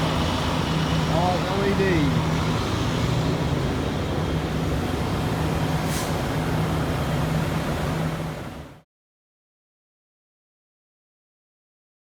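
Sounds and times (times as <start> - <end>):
diesel truck engine idling: 0.0 - 8.8
brief hiss: 5.8 - 6.2.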